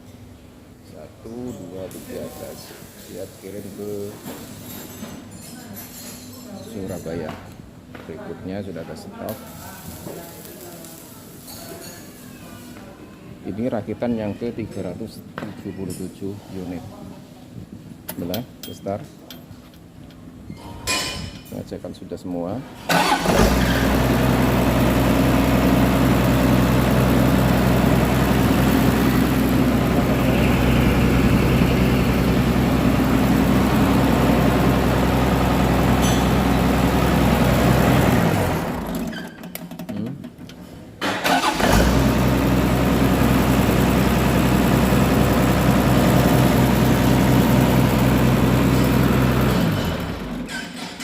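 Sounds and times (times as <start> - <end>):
diesel engine running: 22.9 - 39.1, 41.1 - 50.5.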